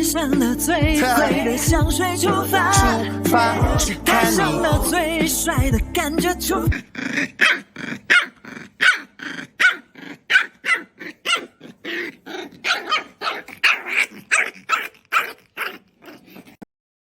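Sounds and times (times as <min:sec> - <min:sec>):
dog barking rapidly: 0:07.3 - 0:15.8.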